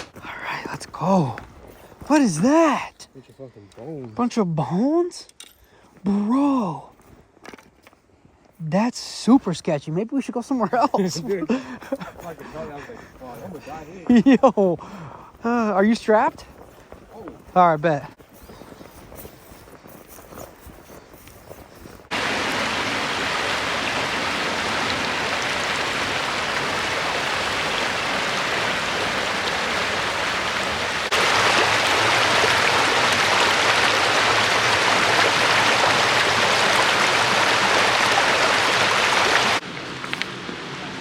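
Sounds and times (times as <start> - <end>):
water rushing over rocks: 22.1 - 41.0.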